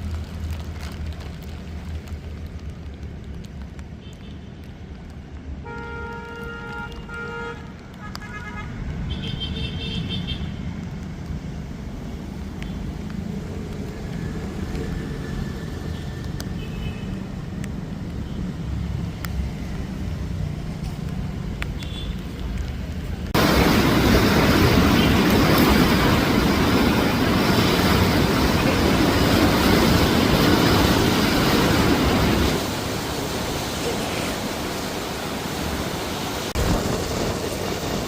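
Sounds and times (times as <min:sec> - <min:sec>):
road traffic rumble: 0:00.0 - 0:38.0
vehicle horn: 0:05.6 - 0:10.5.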